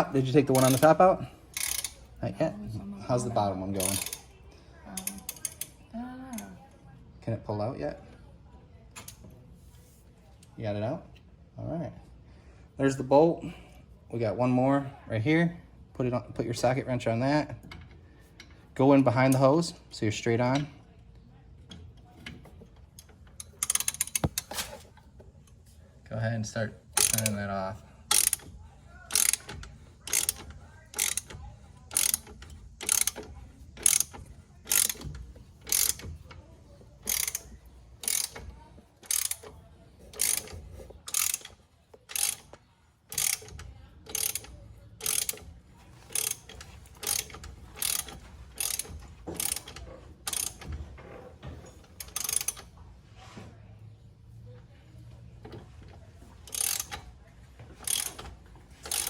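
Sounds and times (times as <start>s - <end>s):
ratchet wrench clicking: 0.5s - 2.1s, 3.8s - 4.3s, 5.0s - 5.8s, 23.0s - 24.5s, 27.0s - 27.5s, 28.1s - 36.3s, 37.0s - 50.7s, 51.9s - 52.7s, 56.4s - 57.0s, 57.8s - 59.0s.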